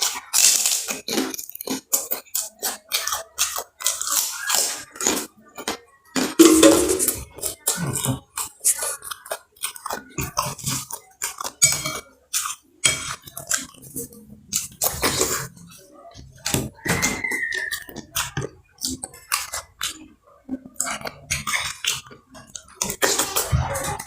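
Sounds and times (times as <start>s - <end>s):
crunching and chewing crackers: 0.0s - 6.5s, 7.1s - 24.0s
cutlery clinking on a plate: 10.3s - 13.7s.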